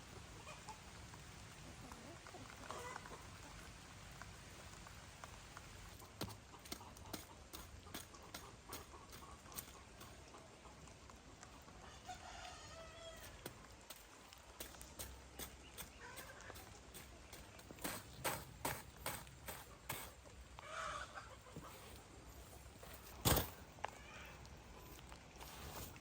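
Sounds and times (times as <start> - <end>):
rooster crowing: 11.9 - 13.4.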